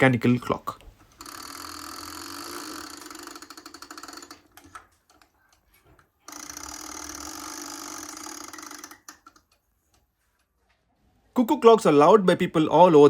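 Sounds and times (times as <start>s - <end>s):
clock ratchet clicking whirr: 1.0s - 5.6s, 6.3s - 9.6s.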